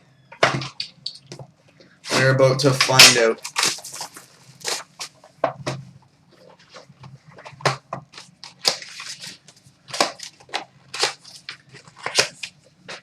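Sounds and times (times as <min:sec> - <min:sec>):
card packaging tearing and crinkling: 0:02.1 - 0:05.2, 0:07.7 - 0:13.0.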